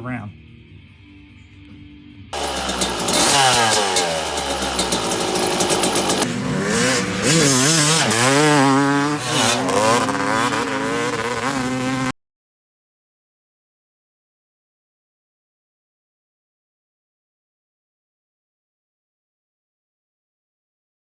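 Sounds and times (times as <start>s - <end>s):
two-stroke motorcycle engine revving: 2.4s - 12.2s.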